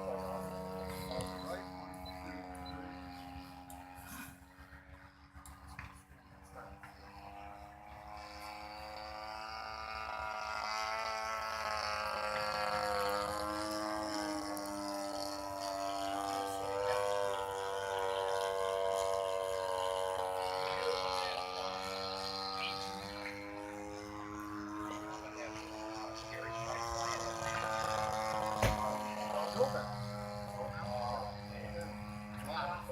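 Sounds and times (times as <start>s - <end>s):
model airplane engine: 0.0s - 32.9s.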